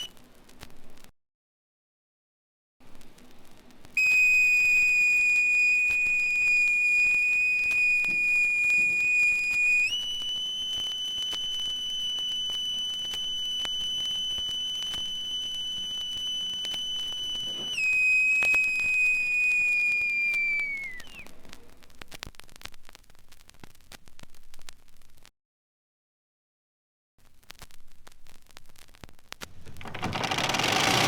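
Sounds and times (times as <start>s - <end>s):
faint record crackle: 0.0s - 1.1s, 2.8s - 25.3s, 27.2s - 31.0s
high whistle-like tone: 4.0s - 21.3s.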